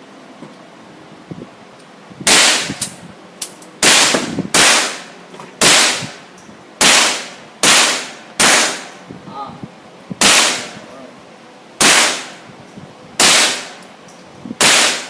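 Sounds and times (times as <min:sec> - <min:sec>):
pistol shots with echo: 0:06.8 - 0:08.9, 0:10.2 - 0:10.8, 0:11.8 - 0:12.4, 0:13.2 - 0:13.8, 0:14.6 - 0:15.0.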